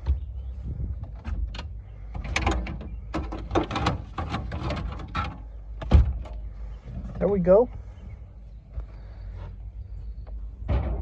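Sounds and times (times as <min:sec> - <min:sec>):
parts clicking and scraping: 0:01.0 - 0:07.4.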